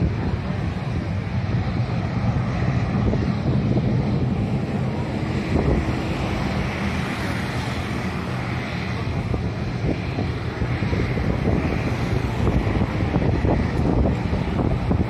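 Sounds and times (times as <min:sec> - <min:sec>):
low rumble: 0:00.0 - 0:15.0
wind buffeting microphone: 0:00.0 - 0:15.0.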